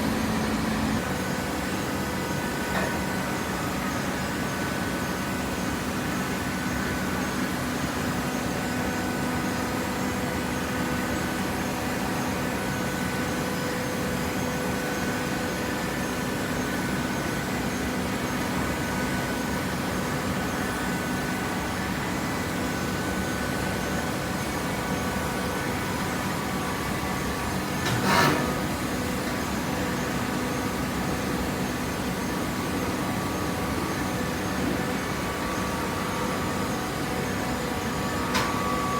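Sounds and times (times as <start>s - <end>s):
hydraulic power unit humming: 0.0s - 5.6s.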